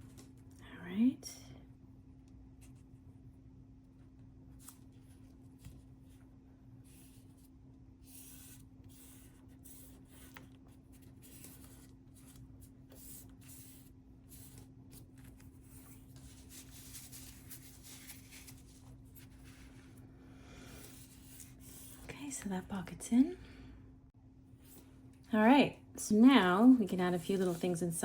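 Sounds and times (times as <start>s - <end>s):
steady low hum: 0.0s - 28.0s
cardstock rustling and rubbing: 6.9s - 20.0s.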